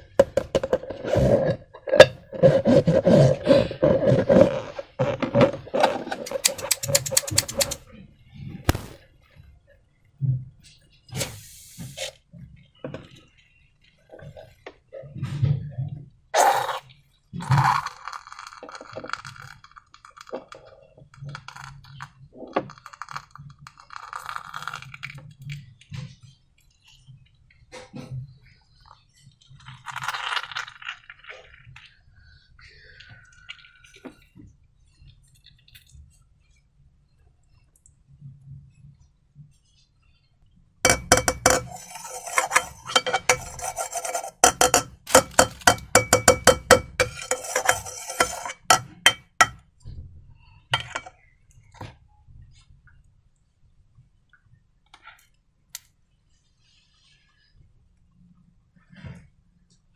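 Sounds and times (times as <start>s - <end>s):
utensil clinking against bowl: 6.3s - 7.8s, 40.9s - 49.6s, 50.8s - 51.1s.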